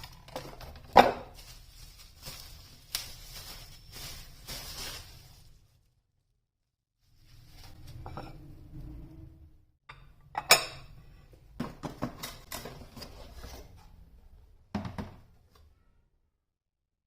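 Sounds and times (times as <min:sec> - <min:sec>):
kitchenware clinking and knocking: 0:00.0 - 0:01.4, 0:09.9 - 0:14.0, 0:14.7 - 0:15.3.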